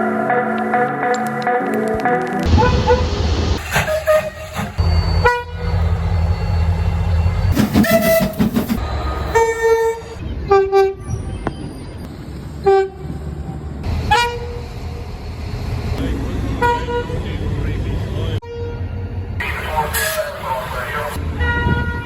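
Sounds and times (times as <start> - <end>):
train horn blasts: 2.5 - 3.1, 3.8 - 5.8, 7.8 - 8.5, 9.2 - 11.0, 12.6 - 13.1, 14.1 - 14.6, 16.6 - 17.2, 18.4 - 18.9, 21.3 - 22.0
train running rumble: 2.5 - 11.3, 12.0 - 22.0.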